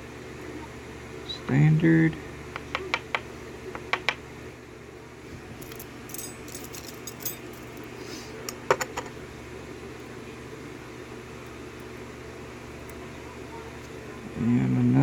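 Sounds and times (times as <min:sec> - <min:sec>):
small metal parts clinking: 0:05.6 - 0:07.9.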